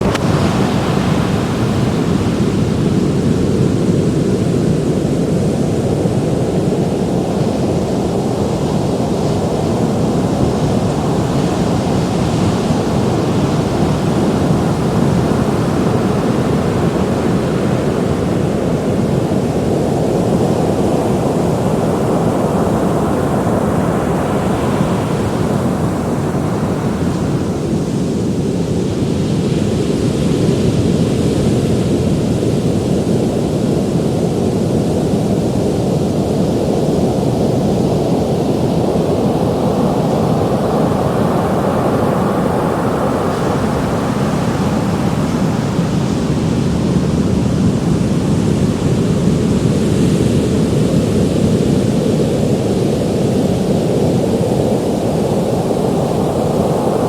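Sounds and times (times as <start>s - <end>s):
ocean waves breaking: 0.0s - 30.0s, 36.9s - 51.4s.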